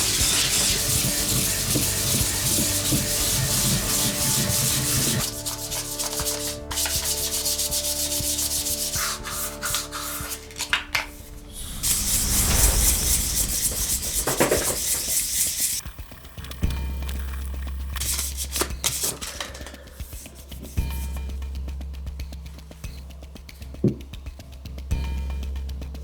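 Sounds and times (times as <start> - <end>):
sandpaper rasping: 0.0 - 15.8, 18.0 - 20.8.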